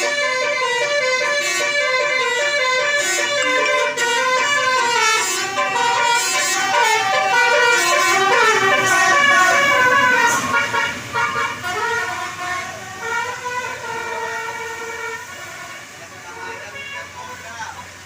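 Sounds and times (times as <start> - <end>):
multi-tone bus horn tune: 0.0 - 17.7.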